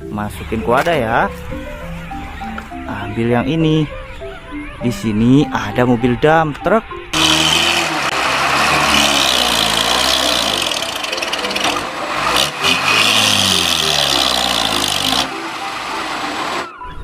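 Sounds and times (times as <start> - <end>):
diesel truck engine revving: 7.2 - 16.7.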